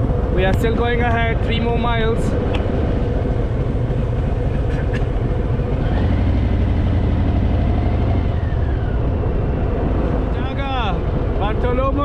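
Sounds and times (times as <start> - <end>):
motorcycle engine running: 0.0 - 10.2.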